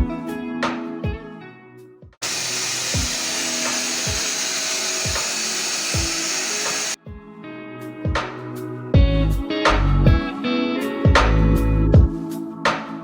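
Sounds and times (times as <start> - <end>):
handheld vacuum cleaner running: 2.2 - 7.0.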